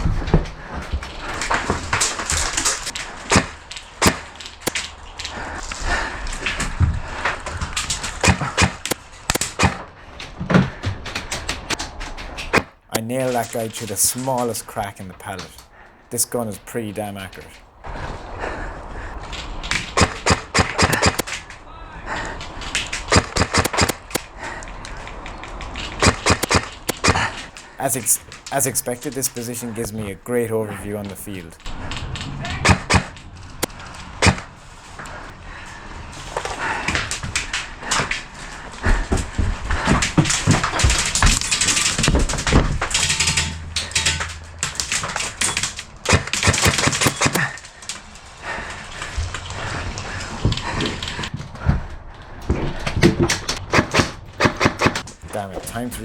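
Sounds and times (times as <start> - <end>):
sharp knocks and cracks: 0.0 - 14.5, 19.1 - 21.6, 22.2 - 29.2, 31.6 - 55.4
airsoft guns firing bursts: 19.9 - 21.4, 23.0 - 24.2, 26.0 - 28.0, 44.7 - 47.5, 53.6 - 55.1
airsoft gunfire cracks: 20.0 - 21.4.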